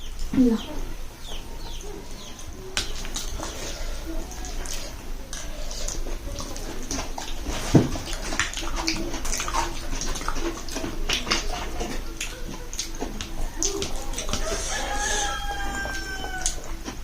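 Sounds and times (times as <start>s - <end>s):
wet mouth clicks and smacks: 8.0s - 14.5s.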